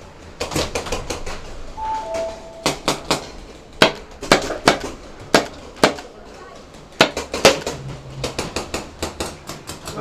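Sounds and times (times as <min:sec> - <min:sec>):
two-note descending beep: 0:01.8 - 0:02.9.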